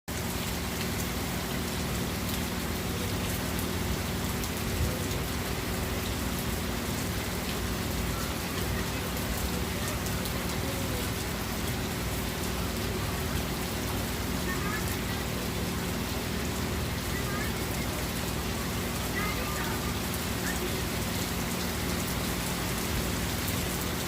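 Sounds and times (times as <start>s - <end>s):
heavy rain falling: 0.1s - 24.0s.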